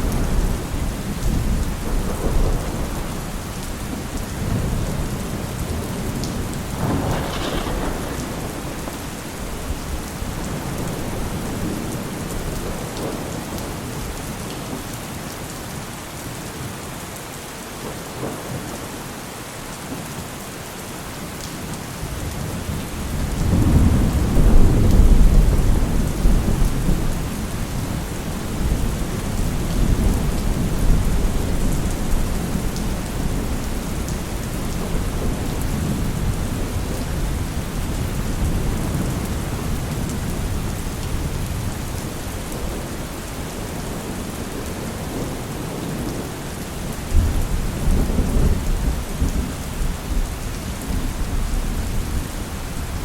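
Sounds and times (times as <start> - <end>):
thunder crack and rumble: 0.0 - 13.8, 22.2 - 42.9, 47.1 - 53.0
heavy rain falling: 0.0 - 53.0.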